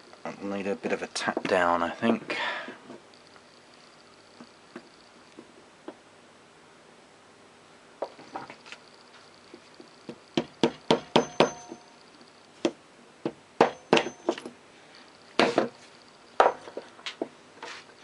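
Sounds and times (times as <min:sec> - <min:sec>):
hammer tapping on metal: 0:10.1 - 0:11.9, 0:12.6 - 0:14.4.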